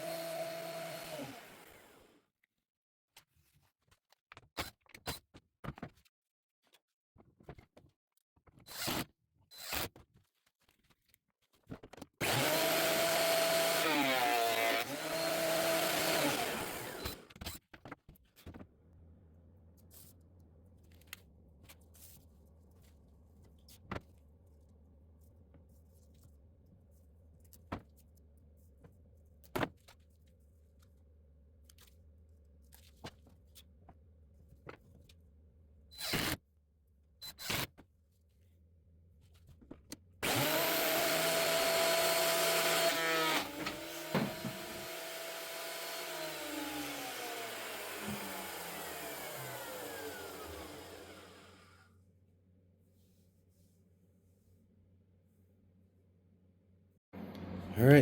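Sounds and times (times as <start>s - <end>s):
woodworking machine running: 0.0s - 2.1s, 12.2s - 17.2s, 40.2s - 51.8s.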